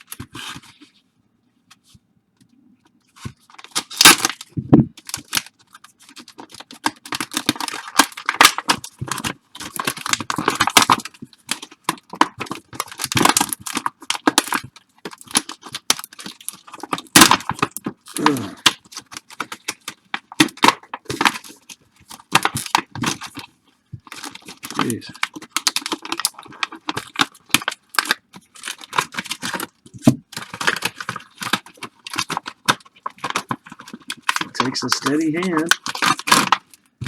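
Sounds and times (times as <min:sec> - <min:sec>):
plastic wrappers crinkling: 0:03.0 - 0:37.0.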